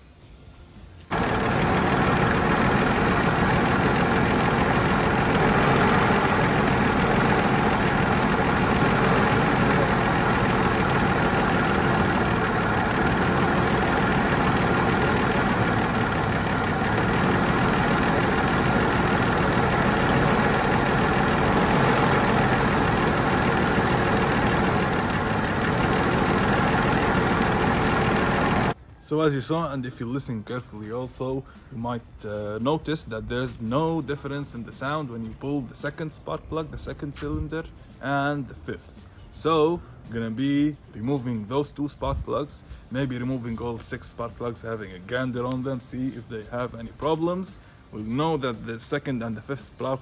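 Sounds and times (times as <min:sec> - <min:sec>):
engine idling with misfire: 0:01.1 - 0:28.8.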